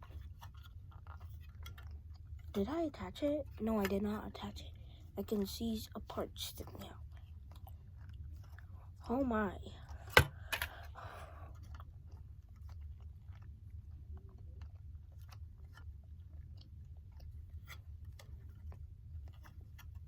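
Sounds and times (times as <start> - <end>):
low steady hum: 0.0 - 20.0
plastic parts clicking together: 10.1 - 10.8.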